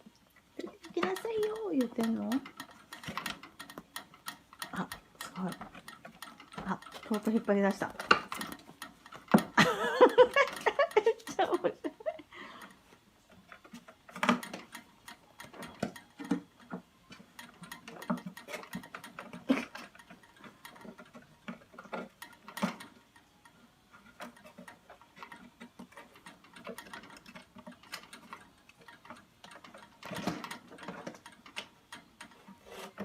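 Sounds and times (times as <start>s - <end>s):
kitten clicking and tapping object: 13.5s - 23.3s.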